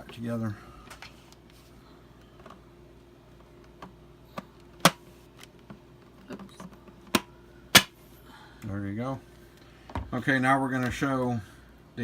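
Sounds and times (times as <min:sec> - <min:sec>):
sharp plastic snaps: 0:07.1 - 0:07.9.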